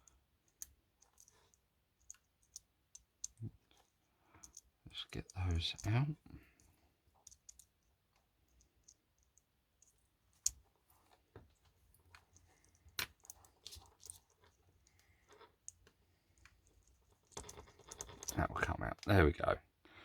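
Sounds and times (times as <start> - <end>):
small plastic clicks and taps: 0.0 - 6.0, 7.2 - 10.6.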